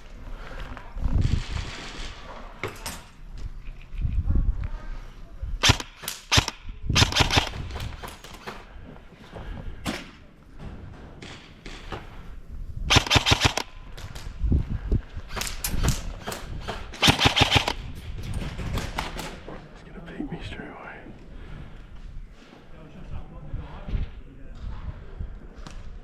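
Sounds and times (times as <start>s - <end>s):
airsoft guns firing bursts: 5.6s - 8.7s, 12.9s - 14.2s, 15.3s - 18.0s
single shots and knocks: 5.6s - 8.7s, 12.9s - 13.8s, 15.3s - 17.8s.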